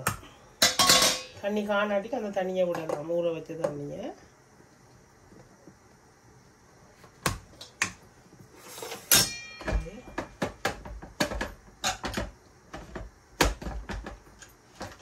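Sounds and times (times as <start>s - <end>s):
kitchen utensils clicking and knocking: 0.0s - 1.4s, 9.0s - 15.0s.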